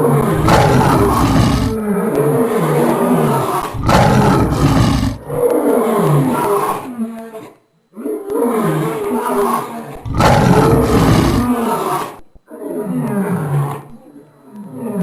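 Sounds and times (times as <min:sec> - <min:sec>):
lion roaring and grunting: 0:00.0 - 0:06.8, 0:10.0 - 0:12.0.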